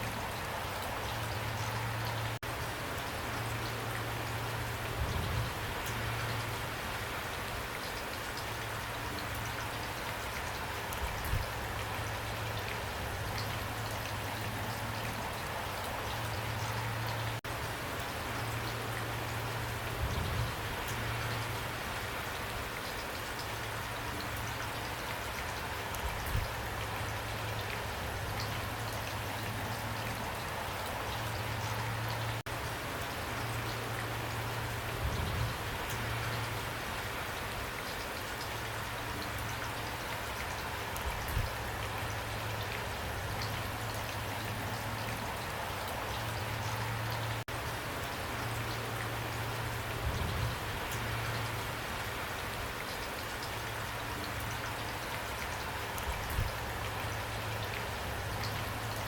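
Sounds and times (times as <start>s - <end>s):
raindrop ticks: 7.8s - 14.2s, 22.8s - 36.6s, 37.8s - 44.2s, 52.8s - 59.0s.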